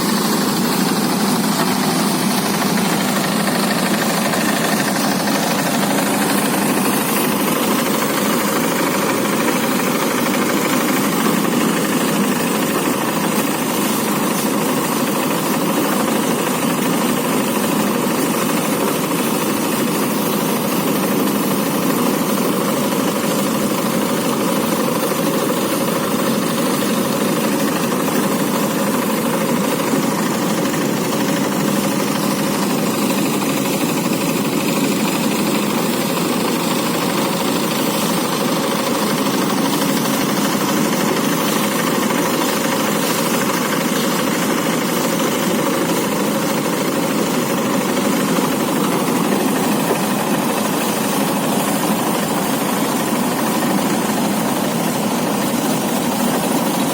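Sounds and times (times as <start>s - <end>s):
rice thresher engine running: 0.0s - 56.9s.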